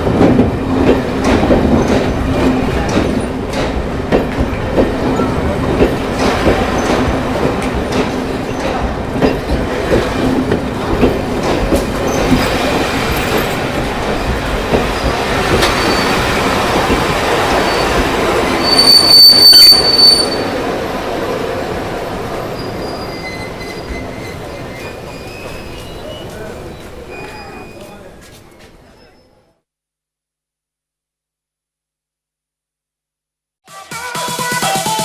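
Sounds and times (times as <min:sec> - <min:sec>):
train wheels rumbling and clacking: 0:00.0 - 0:28.9
high brake squeal: 0:15.6 - 0:16.4, 0:17.6 - 0:18.0, 0:18.6 - 0:20.6, 0:22.5 - 0:28.1.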